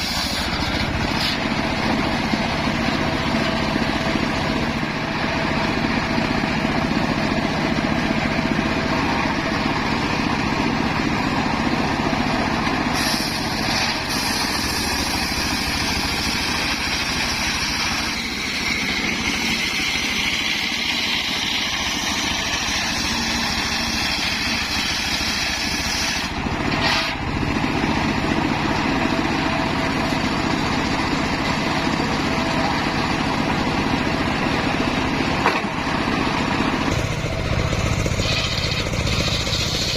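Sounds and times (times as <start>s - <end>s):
saw blade cutting wood: 0.0s - 2.3s, 12.6s - 27.3s, 35.4s - 39.9s
engine-driven circular saw running: 0.0s - 39.9s.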